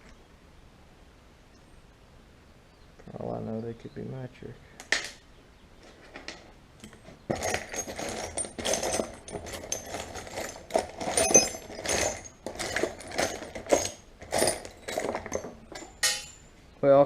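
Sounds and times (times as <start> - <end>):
metal bolts clinking and rattling: 5.8 - 16.6.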